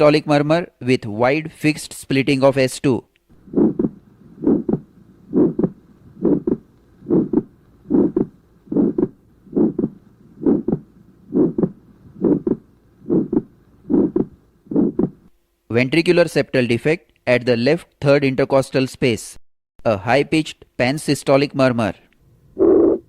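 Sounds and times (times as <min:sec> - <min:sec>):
heartbeat with murmur: 0:03.4 - 0:15.3.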